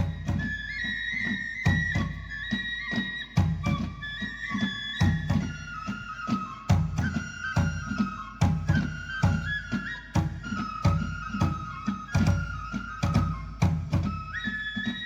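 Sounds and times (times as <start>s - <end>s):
flute-like melody: 0.0s - 15.0s
steady drum beat: 6.7s - 14.2s.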